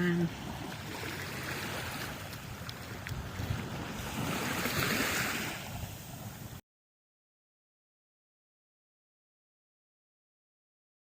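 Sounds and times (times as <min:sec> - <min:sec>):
waves washing onto beach: 0:00.0 - 0:06.6
wind on microphone: 0:00.0 - 0:06.6.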